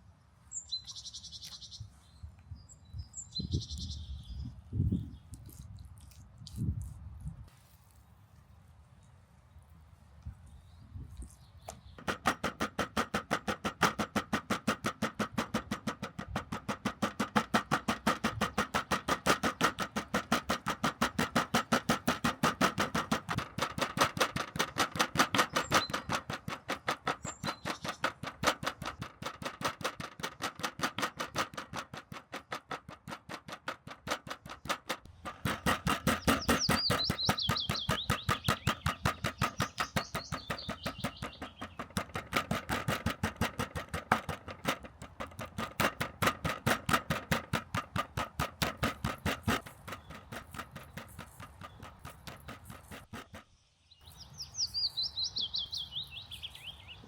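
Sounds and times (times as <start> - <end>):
meat being pounded: 12.0 - 53.4.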